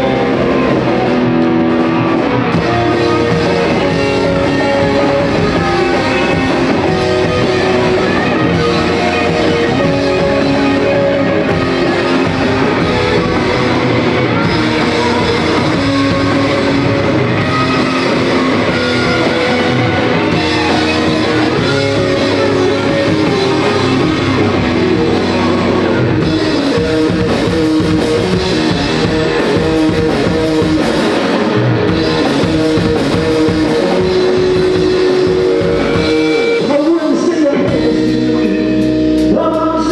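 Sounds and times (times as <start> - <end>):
rock band playing live: 0.0 - 39.9.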